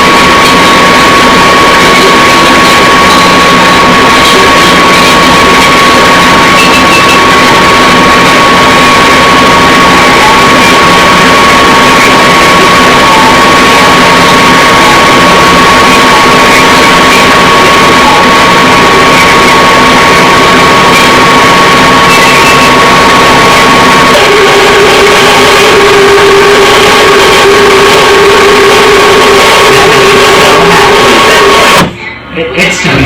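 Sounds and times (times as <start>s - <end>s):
low hum: 0.0s - 33.0s
lower drone: 0.0s - 33.0s
video player whirring with whine: 0.0s - 33.0s.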